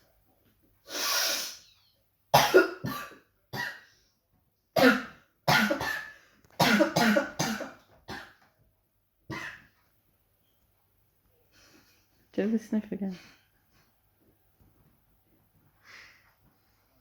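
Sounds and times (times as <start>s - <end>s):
person sniffing: 0.8s - 1.8s
person coughing: 2.4s - 3.8s, 4.8s - 8.4s.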